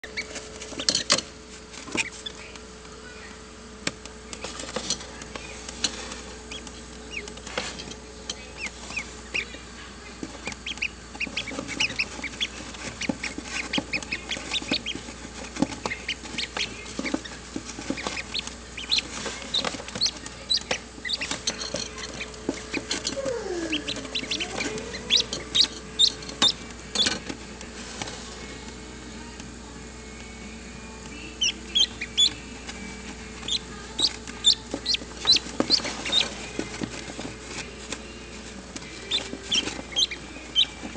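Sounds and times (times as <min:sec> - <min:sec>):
ducklings peeping: 0:00.0 - 0:01.2, 0:01.8 - 0:03.4, 0:06.4 - 0:27.4, 0:31.1 - 0:40.9
steady hum: 0:00.0 - 0:40.9.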